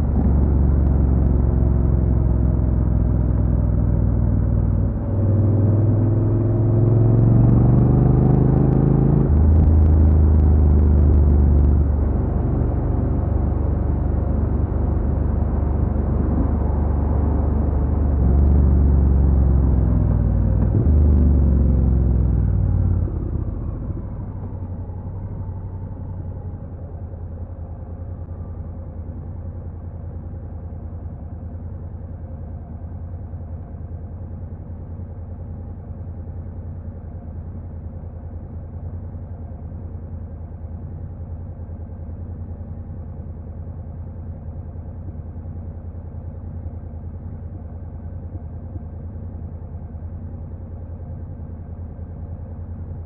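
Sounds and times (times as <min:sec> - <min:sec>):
motorcycle engine accelerating: 0:00.0 - 0:26.5
engine idling: 0:11.3 - 0:53.0.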